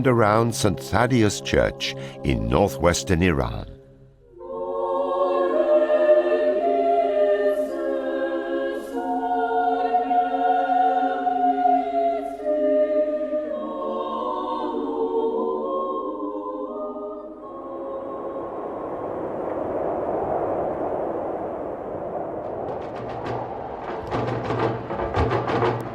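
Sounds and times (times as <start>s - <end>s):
choir chanting: 0.0s - 19.4s.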